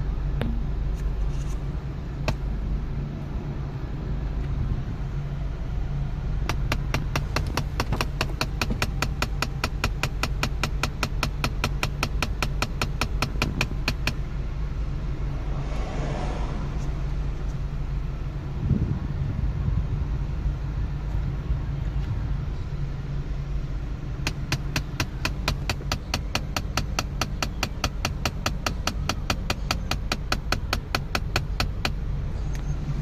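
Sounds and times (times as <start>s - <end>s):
car engine hum: 0.0s - 33.0s
rapid even clicking: 6.5s - 14.2s, 24.2s - 32.0s.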